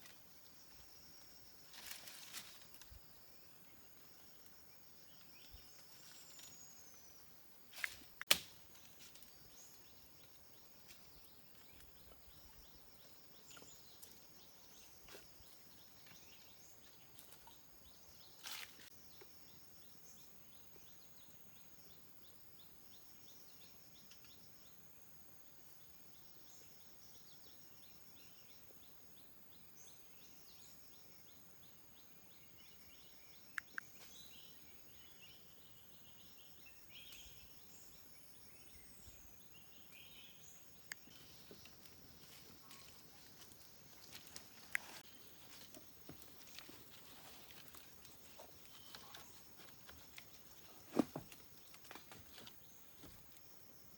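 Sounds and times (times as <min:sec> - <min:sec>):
insects chirping: 0:00.0 - 0:53.9
birds chirping: 0:32.5 - 0:53.4.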